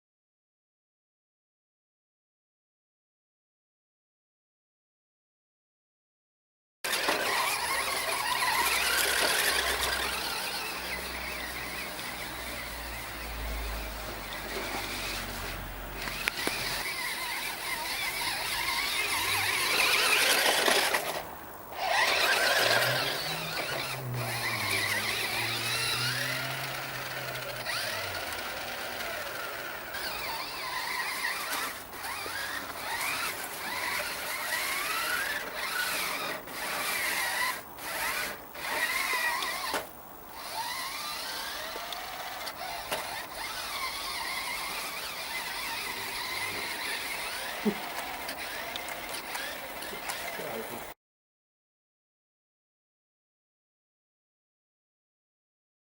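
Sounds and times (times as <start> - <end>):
rc car electric motor whining: 6.9 - 51.0.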